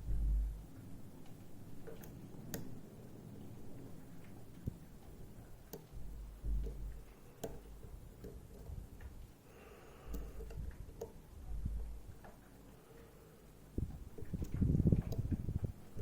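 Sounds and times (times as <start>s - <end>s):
handling bumps and rumble: 0.0s - 0.8s, 6.0s - 7.1s.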